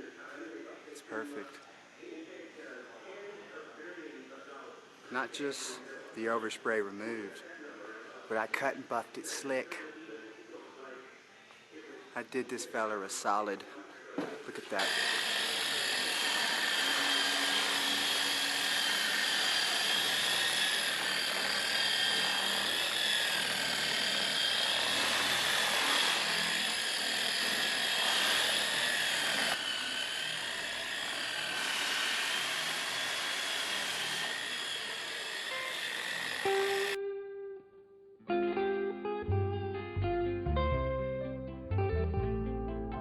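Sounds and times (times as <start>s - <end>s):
electric polisher motor whining: 14.8s - 37.0s.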